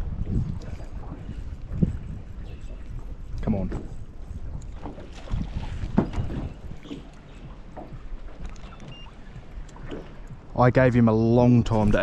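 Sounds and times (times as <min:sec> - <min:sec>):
knocks and bumps on a boat: 0:03.4 - 0:10.6
small water splashes: 0:04.7 - 0:10.4.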